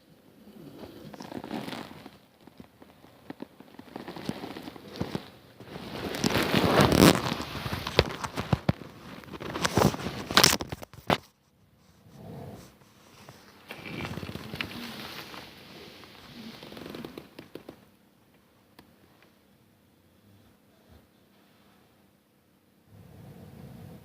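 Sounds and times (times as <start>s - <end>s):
bedding rustling and clicks: 0.9s - 11.4s.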